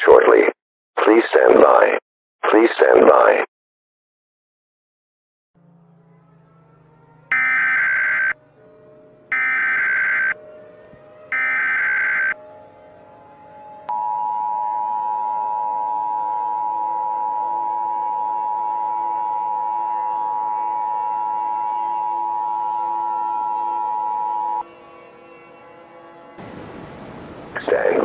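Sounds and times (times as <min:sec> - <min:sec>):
two-tone attention signal: 0:09.3 - 0:10.4, 0:11.3 - 0:12.4.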